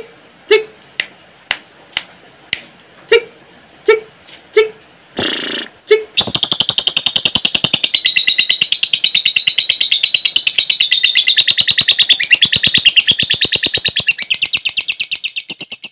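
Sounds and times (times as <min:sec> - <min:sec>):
lovebird chattering trill: 0:05.2 - 0:15.9.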